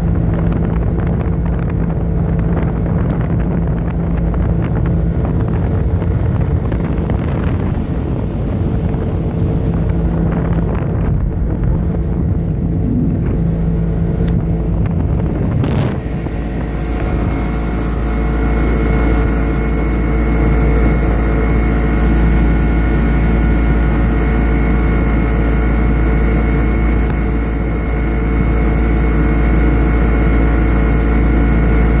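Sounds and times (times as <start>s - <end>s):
outboard motor running: 0.0s - 32.0s
wind buffeting microphone: 0.0s - 32.0s.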